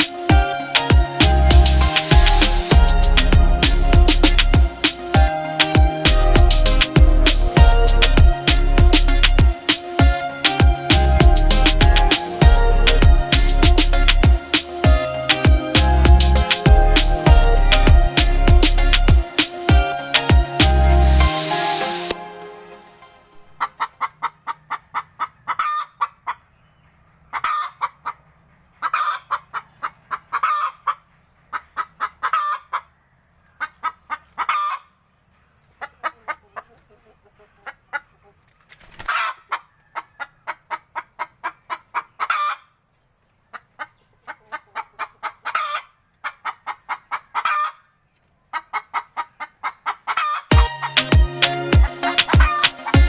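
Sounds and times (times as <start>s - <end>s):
chicken clucking: 23.4s - 51.1s, 51.8s - 53.0s.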